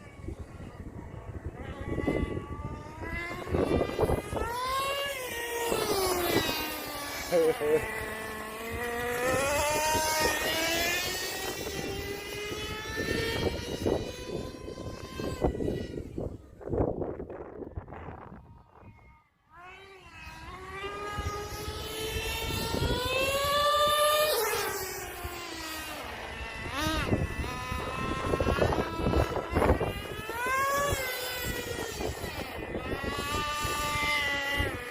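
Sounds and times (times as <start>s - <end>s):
rc truck engine whining: 0.0s - 34.9s.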